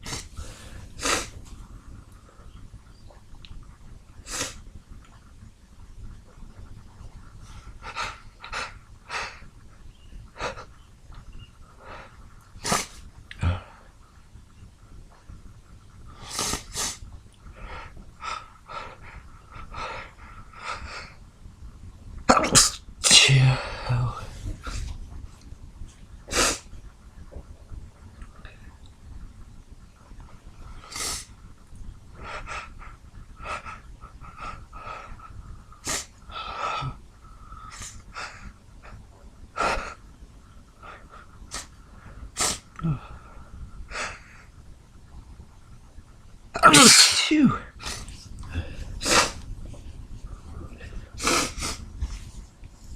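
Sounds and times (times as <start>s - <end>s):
sharp hitching breaths: 0.0s - 1.4s, 46.6s - 49.4s
man sneezing: 22.3s - 23.8s, 46.6s - 48.0s.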